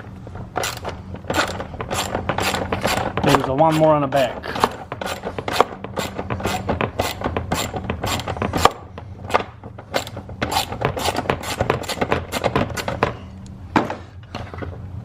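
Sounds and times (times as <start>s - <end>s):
steady low hum: 0.0s - 15.0s
rasping scrapes and clicks of tools: 0.6s - 8.8s.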